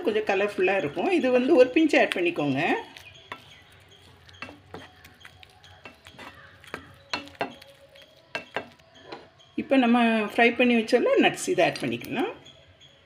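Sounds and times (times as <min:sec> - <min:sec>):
spoon clinking against pan: 0:00.7 - 0:09.3.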